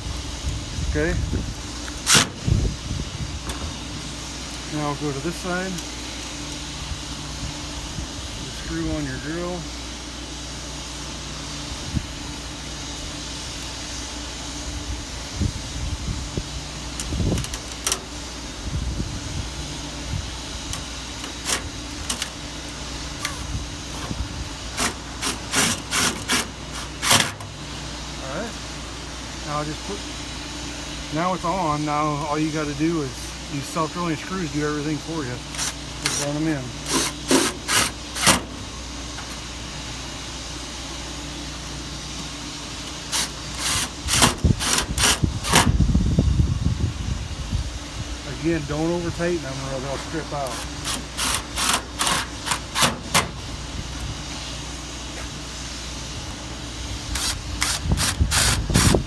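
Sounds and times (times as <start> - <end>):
steady low hum: 0.0 - 59.0
drill driving screws into metal: 1.8 - 2.5, 17.0 - 18.2, 20.7 - 27.5, 35.4 - 39.4, 42.2 - 45.8, 49.9 - 53.5, 57.1 - 59.0.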